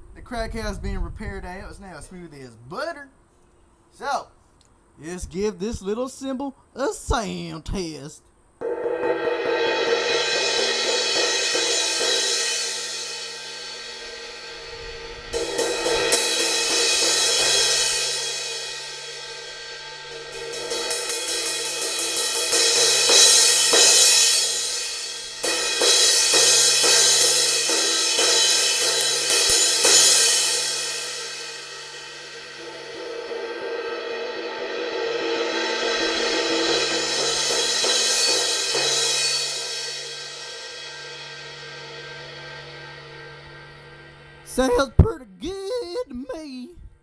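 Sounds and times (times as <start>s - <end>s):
crash cymbal struck: 8.6s - 44.5s.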